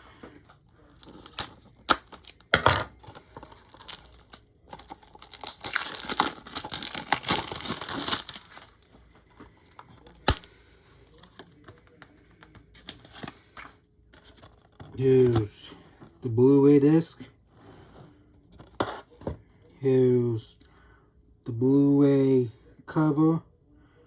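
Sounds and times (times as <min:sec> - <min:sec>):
packaging tearing and crinkling: 0:00.9 - 0:09.0.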